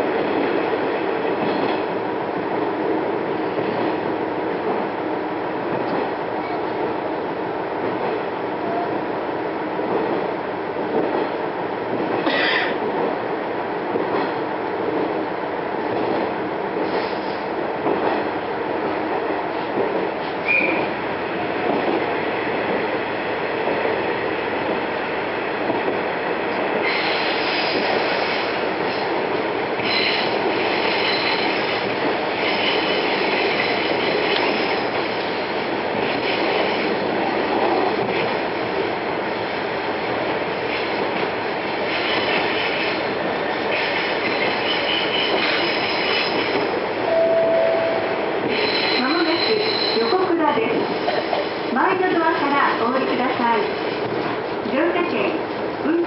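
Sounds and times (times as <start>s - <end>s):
rumble of wheels on rail: 0.0s - 56.0s
high wheel squeal: 48.5s - 50.2s.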